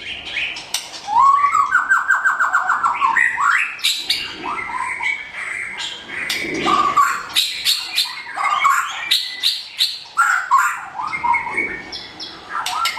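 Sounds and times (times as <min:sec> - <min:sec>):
songbird whistling and clicking: 0:00.5 - 0:04.1, 0:06.2 - 0:12.9.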